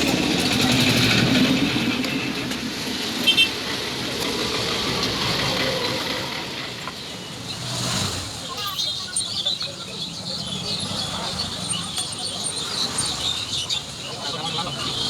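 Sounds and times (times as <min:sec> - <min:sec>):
motor vehicle running: 0:03.6 - 0:08.7.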